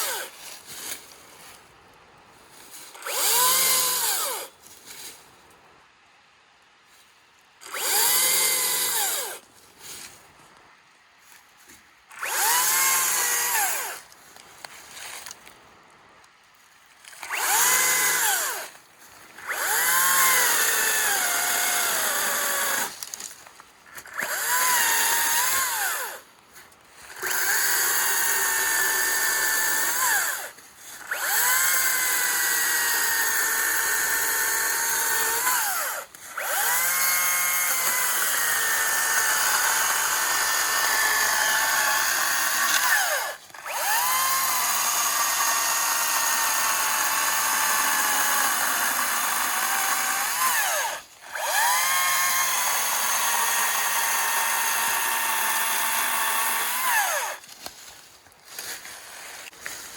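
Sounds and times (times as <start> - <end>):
electric chainsaw whining: 0.0 - 0.4, 2.9 - 4.6, 7.6 - 9.4, 12.1 - 14.1, 17.1 - 18.8, 19.4 - 23.1, 24.0 - 26.3, 27.0 - 57.5.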